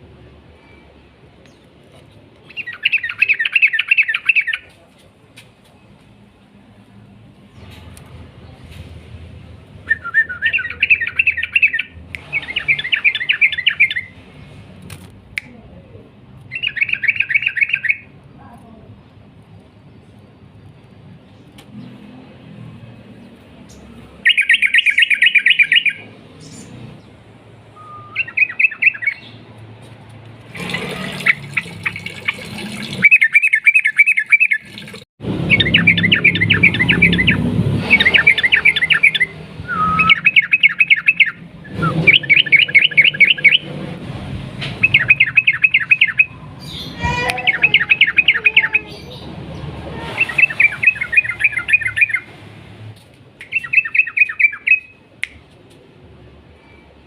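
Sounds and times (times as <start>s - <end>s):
bird singing in chattering bursts: 2.5s - 4.7s, 10.3s - 14.1s, 16.5s - 18.1s, 23.7s - 26.8s, 28.1s - 29.4s, 30.5s - 34.9s, 35.5s - 39.4s, 40.0s - 43.7s, 44.8s - 52.3s, 53.5s - 55.0s.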